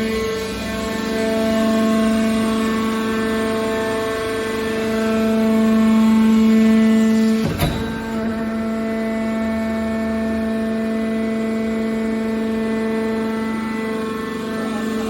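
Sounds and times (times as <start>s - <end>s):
hydraulic press whining: 4.8s - 13.8s
sharp metallic bang: 7.4s - 9.7s.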